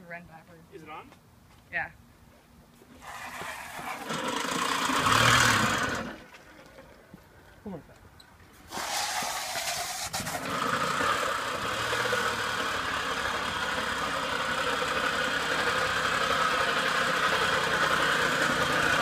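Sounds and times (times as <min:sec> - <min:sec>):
two-stroke moped engine running: 0:03.0 - 0:06.2, 0:10.1 - 0:19.0.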